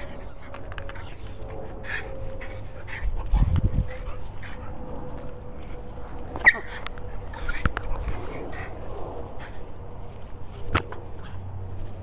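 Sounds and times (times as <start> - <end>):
dog whimpering: 0.0 - 1.4, 6.4 - 7.9.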